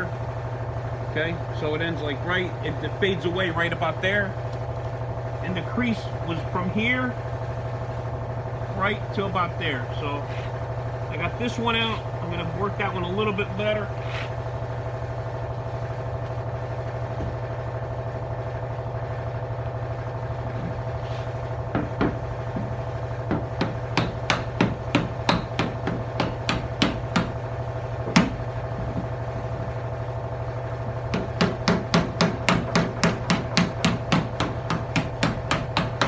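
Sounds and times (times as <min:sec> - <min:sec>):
steady mechanical hum: 0:00.0 - 0:36.0
hammer tapping on sheet metal: 0:21.7 - 0:29.8, 0:31.1 - 0:36.0.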